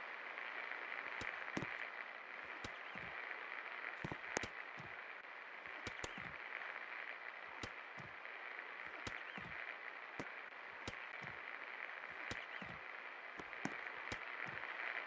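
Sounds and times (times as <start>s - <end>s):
sharp clicks: 2.5s - 3.1s, 4.0s - 5.0s, 5.7s - 6.4s, 7.5s - 8.1s, 8.9s - 9.6s, 10.2s - 11.4s, 12.1s - 12.8s, 13.4s - 14.6s.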